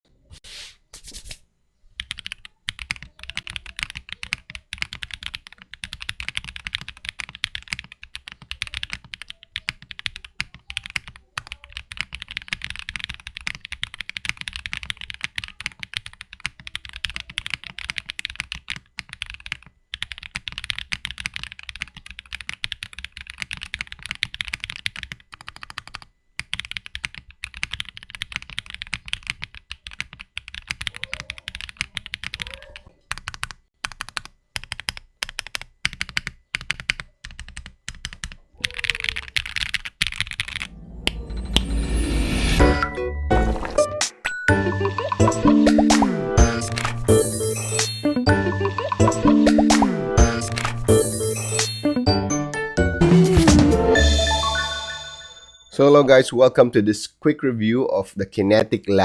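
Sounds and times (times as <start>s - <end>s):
fast typing on mechanical keyboard: 2.0s - 40.7s.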